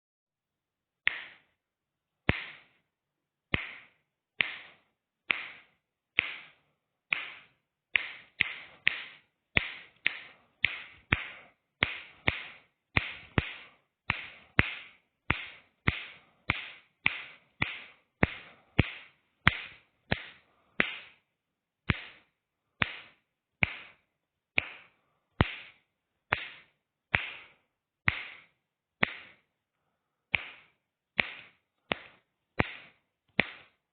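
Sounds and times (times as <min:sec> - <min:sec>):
finger snaps: 0:03.6 - 0:21.2, 0:24.6 - 0:29.4.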